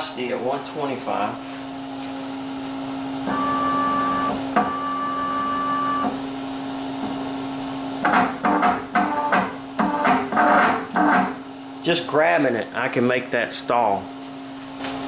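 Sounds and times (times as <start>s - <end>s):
stepper motor humming and whining: 3.2s - 6.2s
motor stuttering: 3.3s - 6.2s.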